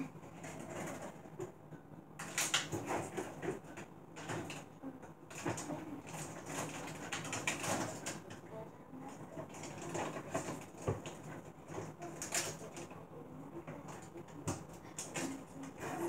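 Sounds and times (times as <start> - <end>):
containers knocking and rustling: 9.1 - 16.0.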